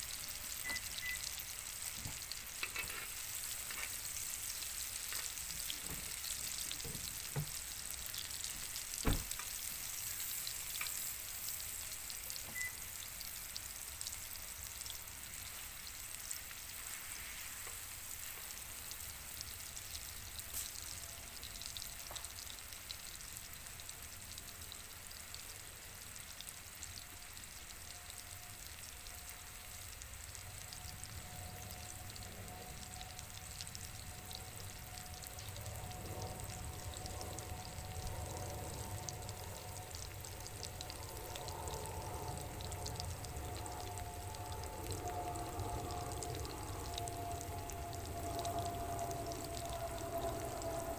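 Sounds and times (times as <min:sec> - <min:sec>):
steak sizzling in a hot pan: 0:00.0 - 0:27.9.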